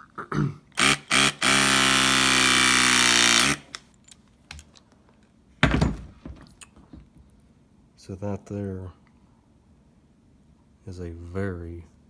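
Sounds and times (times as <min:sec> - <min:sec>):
hydraulic crimper motor running: 0:00.8 - 0:03.8.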